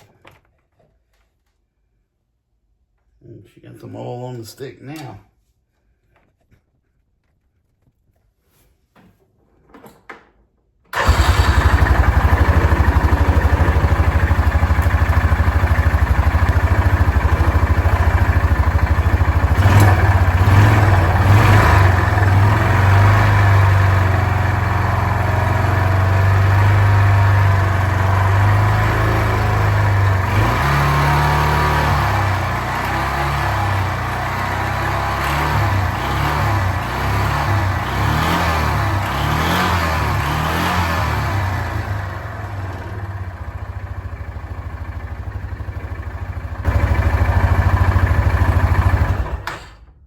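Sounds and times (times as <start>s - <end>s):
single-cylinder engine running: 10.9s - 49.7s.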